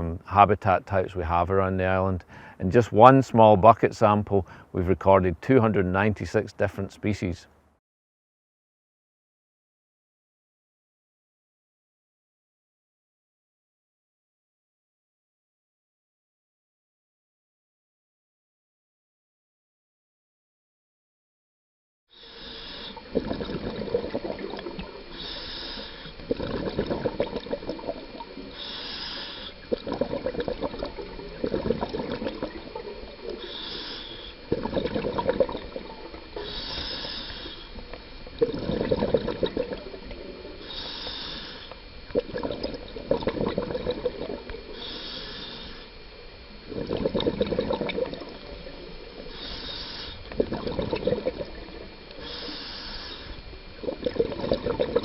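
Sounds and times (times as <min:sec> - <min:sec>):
regulator inhalation hiss: 0:22.1 - 0:23.3, 0:24.3 - 0:31.8, 0:32.4 - 0:39.2, 0:39.8 - 0:42.2, 0:42.8 - 0:47.4, 0:48.3 - 0:50.7, 0:51.5 - 0:54.0
exhaled bubbles underwater: 0:22.4 - 0:55.0.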